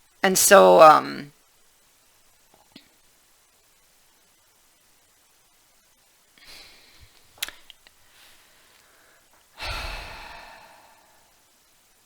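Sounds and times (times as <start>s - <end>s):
person breathing: 6.4s - 7.2s, 8.1s - 11.4s.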